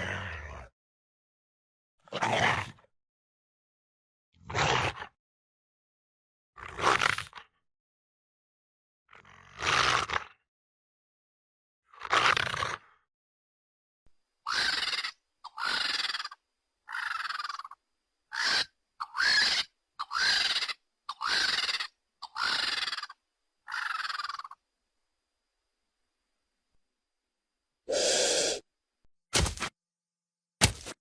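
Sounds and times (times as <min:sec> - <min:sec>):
raptor creature calls: 0:14.5 - 0:24.6, 0:27.9 - 0:28.6.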